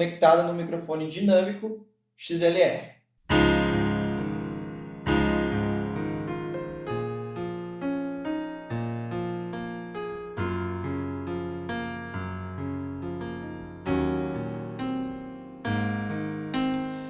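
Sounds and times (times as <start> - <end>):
electronic piano chords: 3.3 - 17.0.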